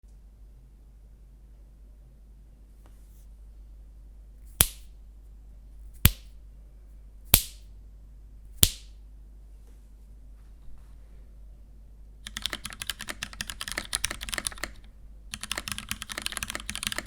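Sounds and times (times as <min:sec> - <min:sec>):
mechanical keyboard keystrokes: 0:12.3 - 0:17.0.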